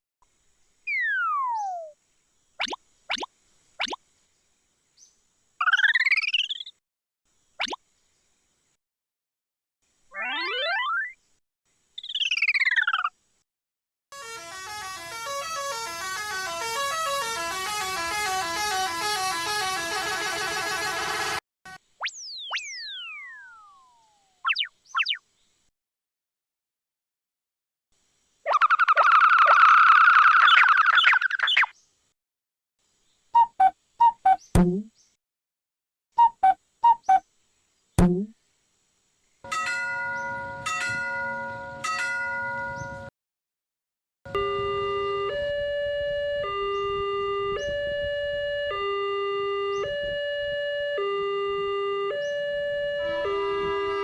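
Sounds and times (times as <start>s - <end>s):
high electronic blips: 10.1s - 11.2s
musical horn playing tune: 14.1s - 21.8s, 52.1s - 54.0s
bell-like chime: 39.5s - 43.1s.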